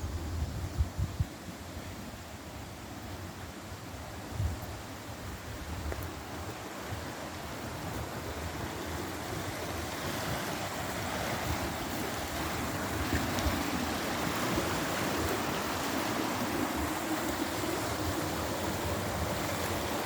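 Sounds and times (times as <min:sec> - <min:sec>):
rushing river water: 0:00.0 - 0:20.0.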